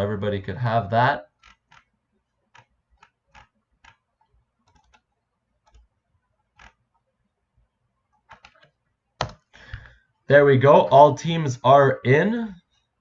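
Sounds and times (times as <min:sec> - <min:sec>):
computer mouse clicks: 0:01.4 - 0:01.9, 0:02.5 - 0:05.9, 0:06.5 - 0:07.0, 0:08.1 - 0:09.9
keyboard clicks: 0:04.6 - 0:05.9, 0:08.2 - 0:09.9.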